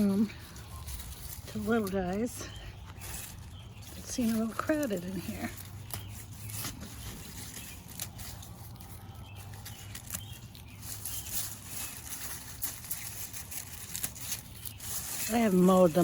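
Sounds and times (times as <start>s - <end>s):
lettuce leaves snapping: 0.0s - 16.0s.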